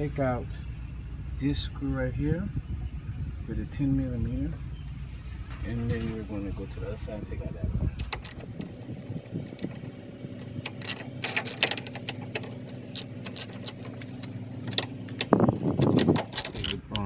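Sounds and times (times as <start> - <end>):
low hum: 0.0 - 17.0
socket wrench clicking: 10.6 - 13.9, 14.7 - 17.0.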